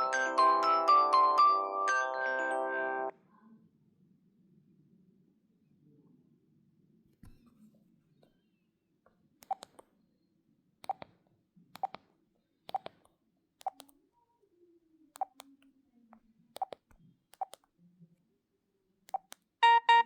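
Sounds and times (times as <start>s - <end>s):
phone keypad clicks: 9.4s - 9.8s, 11.8s - 12.1s, 12.7s - 13.0s, 13.6s - 13.9s, 16.6s - 17.6s, 19.1s - 19.4s.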